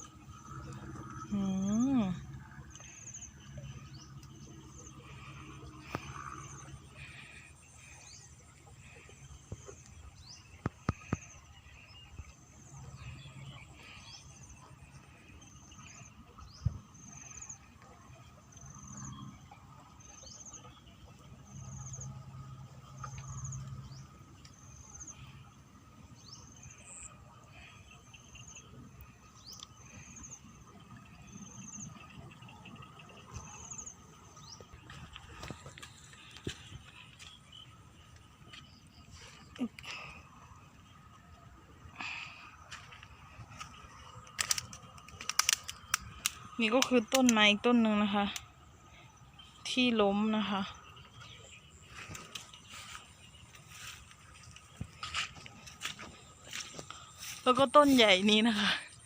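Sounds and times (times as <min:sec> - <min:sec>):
faint low rumble: 0:00.0 - 0:45.1
faint insect or bird calls: 0:00.0 - 0:59.0
sharp clicks: 0:44.2 - 0:47.4.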